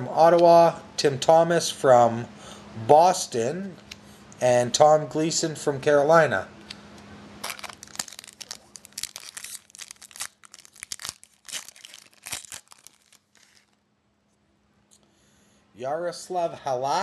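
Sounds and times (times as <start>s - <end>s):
foil wrapper tearing and crinkling: 7.4s - 13.8s.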